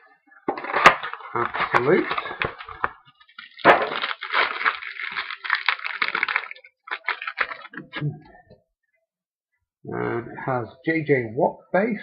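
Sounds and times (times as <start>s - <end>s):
card pack wrapper tearing: 0.6s - 8.0s.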